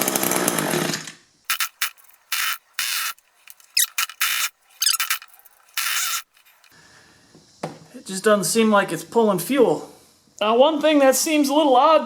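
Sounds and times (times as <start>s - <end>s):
squishy squeaky primer bulb presses: 1.5s - 6.7s.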